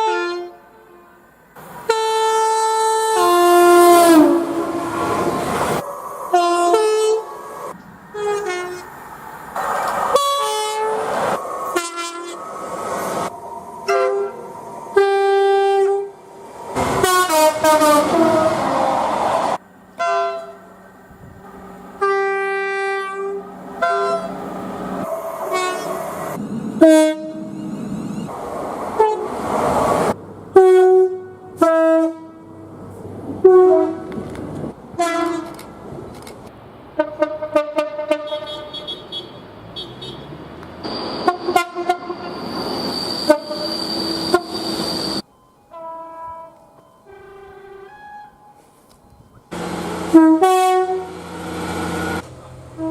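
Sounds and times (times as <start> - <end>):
train horn blasts: 0.0 - 1.3, 1.9 - 5.3, 6.3 - 7.3, 8.1 - 8.9, 10.1 - 11.0, 11.7 - 12.4, 13.8 - 16.2, 16.8 - 18.8, 20.0 - 20.7, 22.0 - 24.4, 25.4 - 26.0, 26.8 - 27.6, 29.0 - 29.3, 30.5 - 32.6, 33.4 - 34.2, 35.0 - 35.6, 37.0 - 40.2, 40.9 - 42.4, 43.0 - 48.6, 50.0 - 51.2
train running: 0.0 - 39.0, 40.3 - 52.9.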